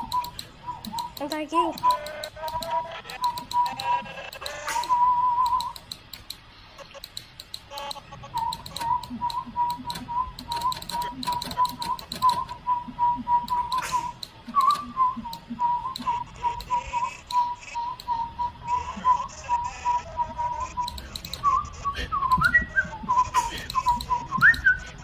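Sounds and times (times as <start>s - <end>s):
sharp clicks: 0.0s - 18.8s, 19.8s - 24.8s
person whistling short notes: 4.6s - 5.8s, 8.4s - 19.2s, 19.8s - 25.0s.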